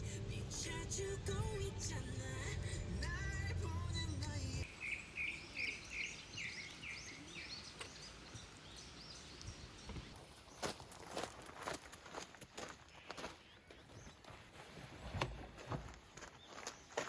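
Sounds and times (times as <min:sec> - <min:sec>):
background music: 0:00.0 - 0:04.7
faint outdoor ambience: 0:00.0 - 0:17.0.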